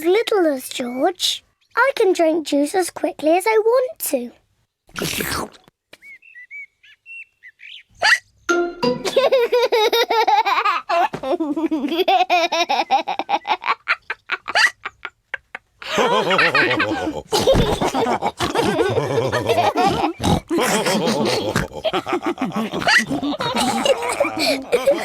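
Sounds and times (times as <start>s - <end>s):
pig snorts: 4.9s - 5.6s, 16.8s - 24.6s
short gulping sounds: 4.9s - 5.7s, 16.9s - 24.6s
cartoon pigs laughing: 9.0s - 25.0s.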